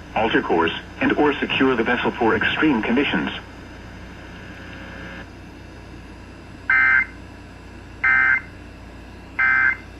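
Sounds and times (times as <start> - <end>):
digital data tone bursts: 8.0 - 8.5, 9.4 - 9.8.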